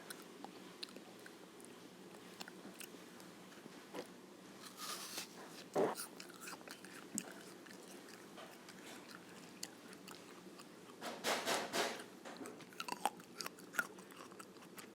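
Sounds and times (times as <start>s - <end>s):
crisp crunching of snack: 4.6s - 10.7s.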